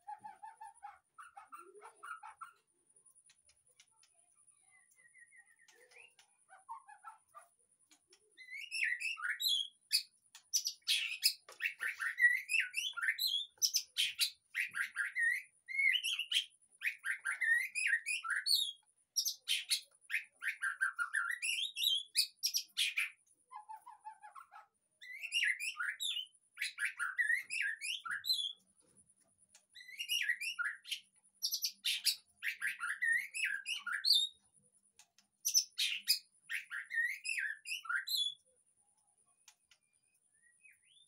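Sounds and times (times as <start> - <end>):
songbird singing whistled phrases: 8.4 - 24.4, 25.0 - 28.6, 29.7 - 34.4, 35.4 - 38.5, 40.0 - 41.0.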